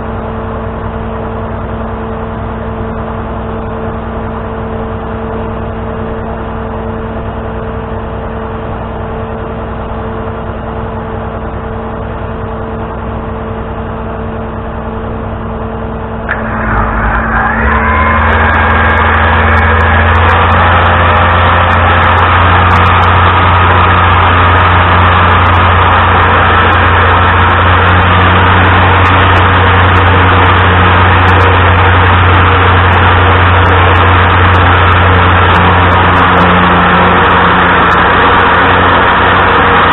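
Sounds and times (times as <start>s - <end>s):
truck engine idling and revving: 0.0s - 39.9s
click: 16.2s - 16.4s.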